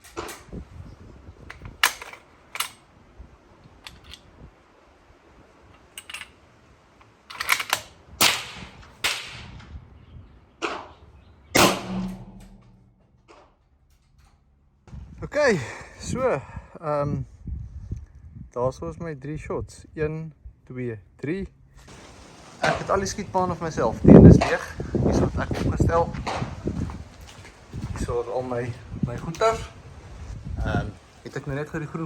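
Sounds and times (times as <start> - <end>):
sharp clicks and knocks: 1.4 - 2.8, 3.8 - 4.3, 7.0 - 9.7
suppressed rifle shots: 7.3 - 9.6, 11.6 - 12.8.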